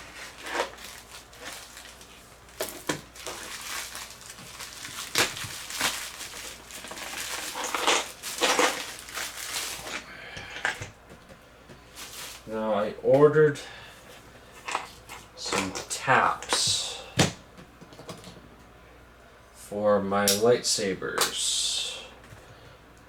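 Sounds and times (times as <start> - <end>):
packaging crinkling and rustling: 0.0 - 12.5.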